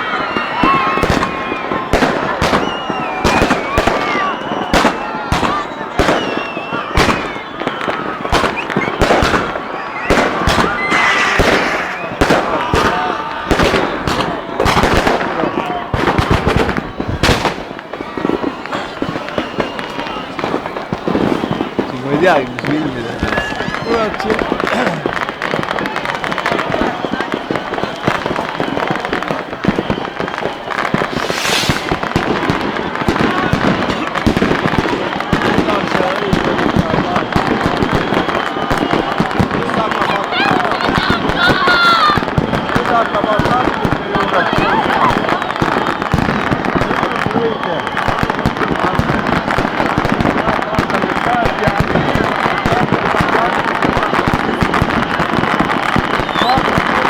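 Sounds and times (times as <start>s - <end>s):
fireworks bangs: 0.0s - 57.0s
fireworks crackling: 0.0s - 57.0s
fireworks whistles: 0.0s - 57.0s
brief hiss: 31.0s - 32.0s.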